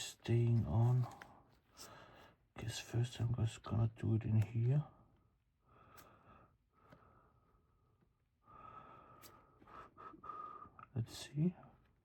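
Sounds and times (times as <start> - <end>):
faint breathing: 1.7 - 2.4, 8.4 - 10.8.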